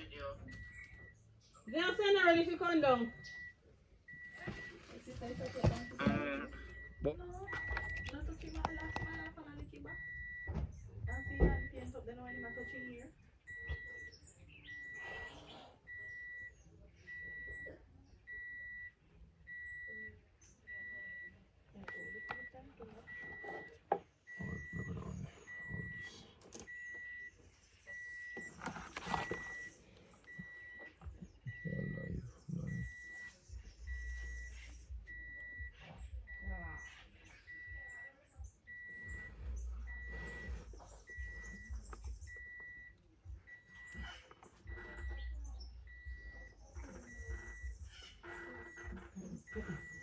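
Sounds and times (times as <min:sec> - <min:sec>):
high-pitched electronic beeping: 0:37.5 - 0:50.0.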